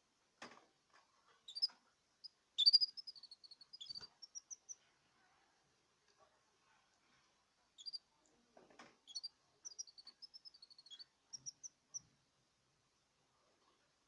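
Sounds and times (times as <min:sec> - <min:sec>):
canary chirping: 0:01.5 - 0:04.8, 0:07.8 - 0:08.0, 0:09.1 - 0:12.1.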